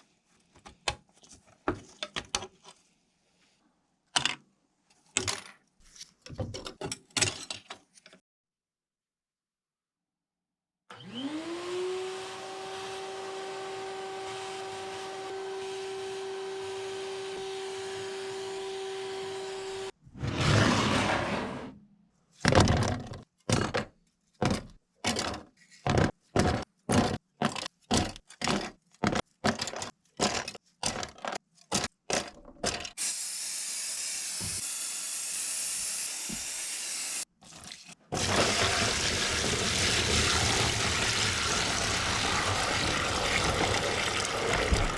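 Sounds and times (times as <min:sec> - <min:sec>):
small electric tool motor: 0:10.9 - 0:19.9, 0:33.0 - 0:37.2.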